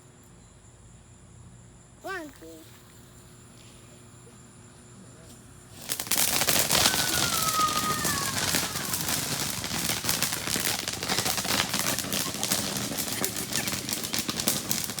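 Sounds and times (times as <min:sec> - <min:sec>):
firecrackers cracking: 0:05.6 - 0:15.0
falling whistle: 0:06.5 - 0:14.9.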